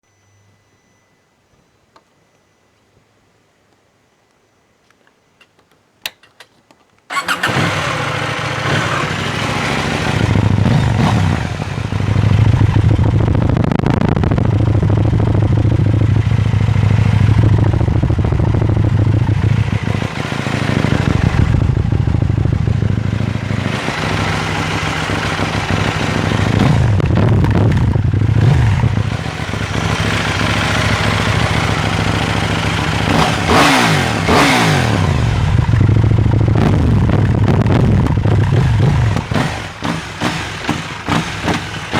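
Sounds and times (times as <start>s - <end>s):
engine revving blips: 7.1s - 41.9s
motorcycle engine idling: 7.1s - 41.9s.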